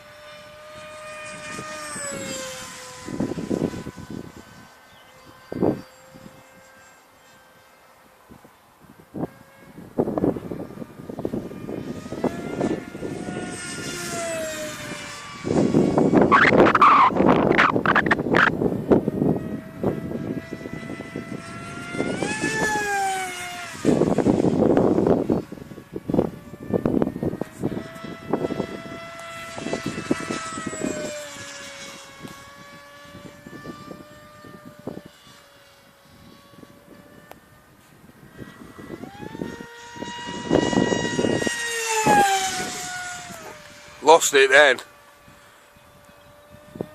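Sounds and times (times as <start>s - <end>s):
wind buffeting microphone: 0.0s - 6.9s, 8.0s - 46.9s
electric motor and propeller whining: 0.0s - 46.9s.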